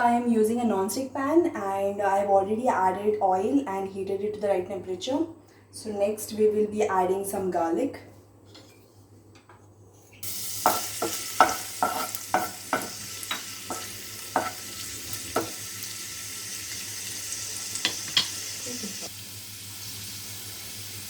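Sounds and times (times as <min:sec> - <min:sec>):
garlic sizzling in oil: 0:10.2 - 0:21.0
utensil knocking on pan: 0:10.6 - 0:14.7, 0:15.3 - 0:15.6, 0:17.8 - 0:18.4.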